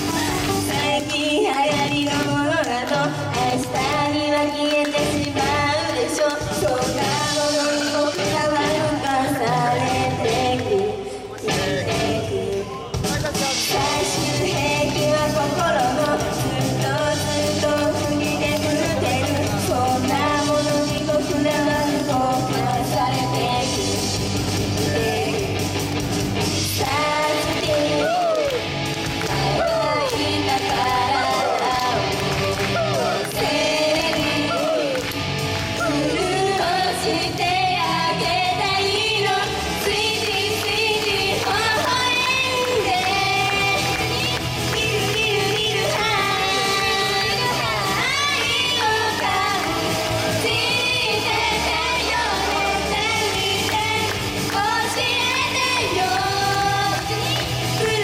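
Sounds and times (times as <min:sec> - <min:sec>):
live rock song with vocals: 0:00.0 - 0:58.0
pop backing track with beat: 0:00.0 - 0:58.0.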